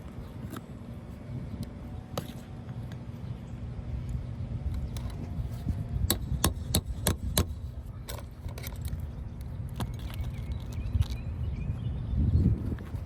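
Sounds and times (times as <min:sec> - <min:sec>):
steady low rumble: 0:00.0 - 0:13.0
hand tool tapping on shingle: 0:06.1 - 0:07.6.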